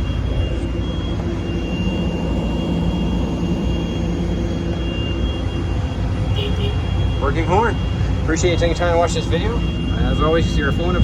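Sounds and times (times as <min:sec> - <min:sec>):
thin high whine: 0:00.0 - 0:05.9
excavator diesel engine hum: 0:00.0 - 0:11.0.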